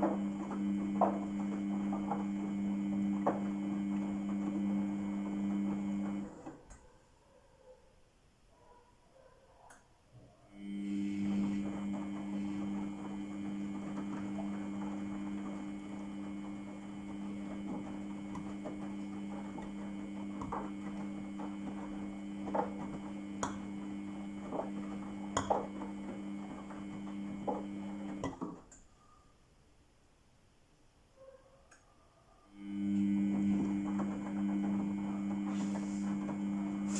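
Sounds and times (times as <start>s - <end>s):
washing machine motor hum: 0.0s - 7.0s, 10.5s - 29.1s, 32.5s - 36.9s.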